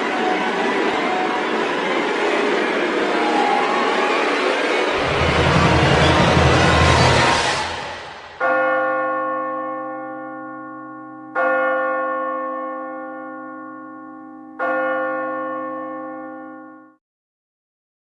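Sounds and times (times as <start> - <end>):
loud rushing noise: 0.0 - 8.4
bell tolling: 5.0 - 16.6.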